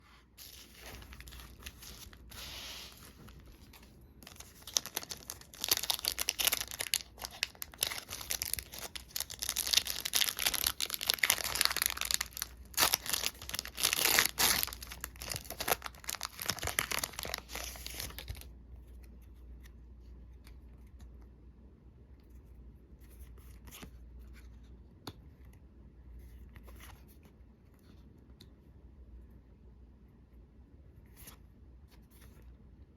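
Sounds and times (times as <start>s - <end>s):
foil wrappers tearing and crinkling: 4.3s - 18.4s.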